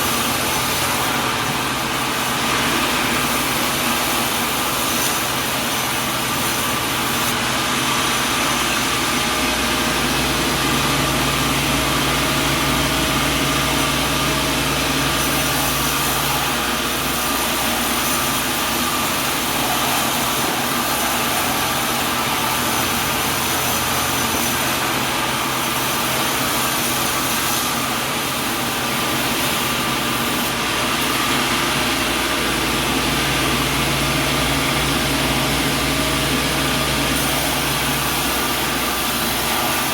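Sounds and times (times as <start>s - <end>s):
machinery engine-like drone: 0.0s - 29.1s.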